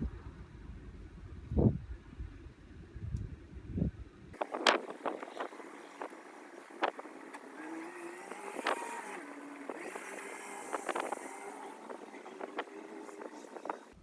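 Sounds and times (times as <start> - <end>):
distant vehicle engine running: 0.0 - 14.0.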